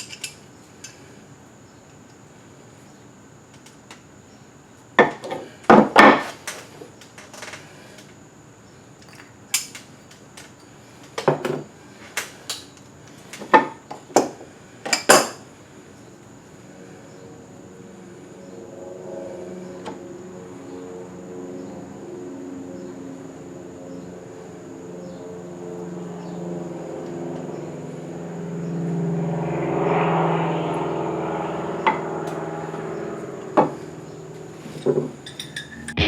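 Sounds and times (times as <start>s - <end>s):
faint high whine: 15.6s - 36.0s.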